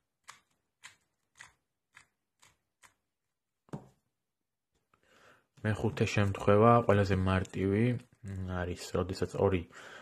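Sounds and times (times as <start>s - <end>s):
puzzle cube clicking: 0.2s - 3.0s.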